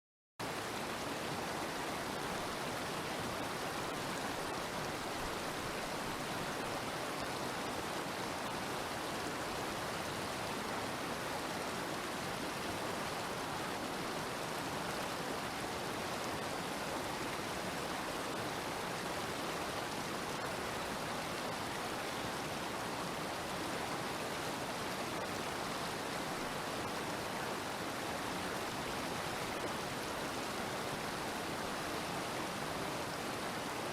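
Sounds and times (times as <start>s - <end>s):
waterfall rushing: 0.9s - 33.9s.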